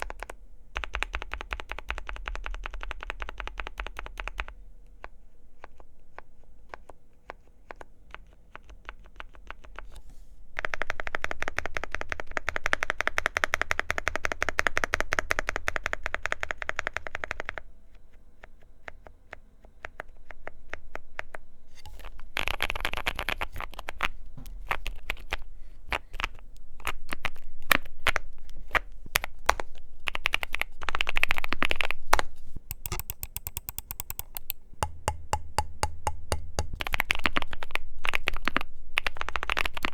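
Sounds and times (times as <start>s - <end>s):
mechanical keyboard typing: 0.0s - 4.6s, 10.6s - 17.6s, 22.0s - 34.6s, 36.6s - 39.9s.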